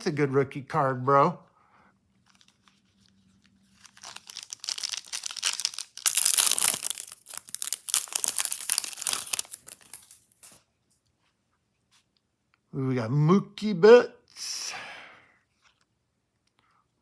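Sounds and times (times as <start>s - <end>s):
foil wrapper crinkling and tearing: 3.7s - 10.6s.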